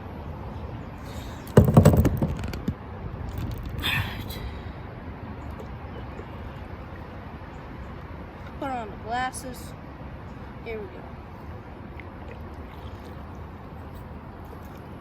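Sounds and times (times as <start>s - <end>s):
knocks and rattling clicks: 1.4s - 3.8s.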